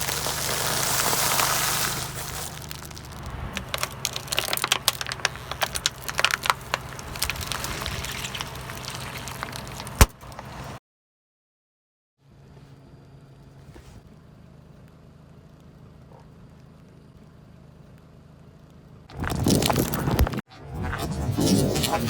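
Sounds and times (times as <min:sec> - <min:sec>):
low engine hum: 0:00.0 - 0:10.8
objects cracking under tyre: 0:00.0 - 0:10.8, 0:19.1 - 0:20.4.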